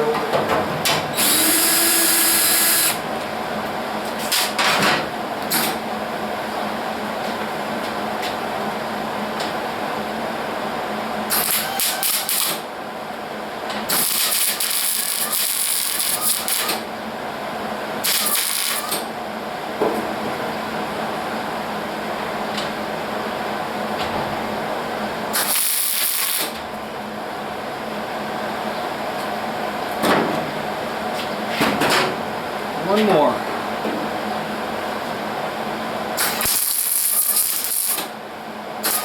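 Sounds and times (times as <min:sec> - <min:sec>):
welder arc crackling: 0:13.9 - 0:16.8, 0:18.0 - 0:19.0, 0:25.4 - 0:26.5, 0:36.2 - 0:38.0.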